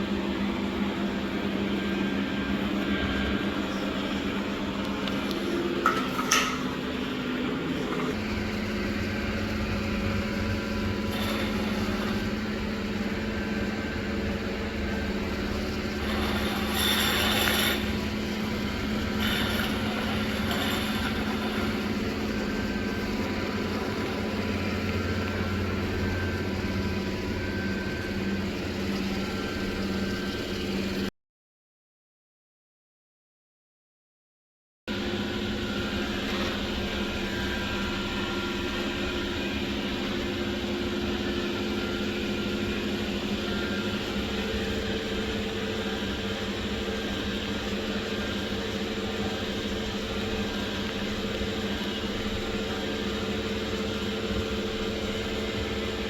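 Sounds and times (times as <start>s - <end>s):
robot vacuum cleaner humming: 0.0s - 30.2s, 34.9s - 55.8s.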